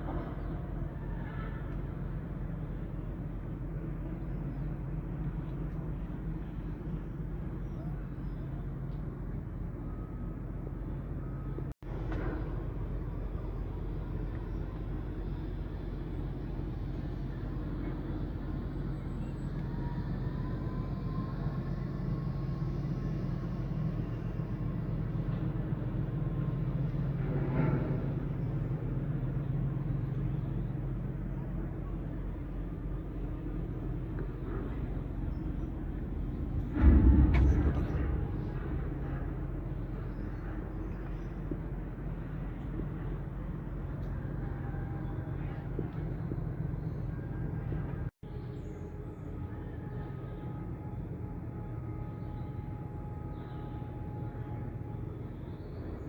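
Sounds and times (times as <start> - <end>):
distant traffic hum: 0.0 - 56.0
wind rumble on microphone: 11.8 - 56.0.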